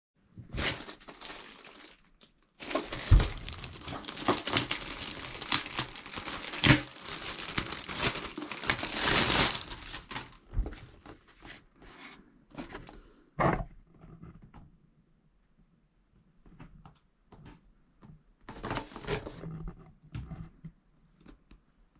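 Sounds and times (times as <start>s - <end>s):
crinkling and rustling: 0.4s - 13.0s, 18.4s - 21.5s.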